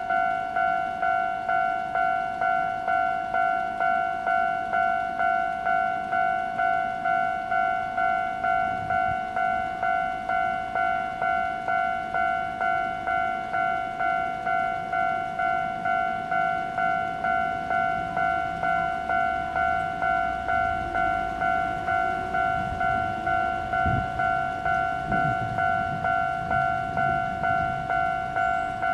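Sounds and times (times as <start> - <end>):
level-crossing electronic bell ringing: 0.0 - 28.9.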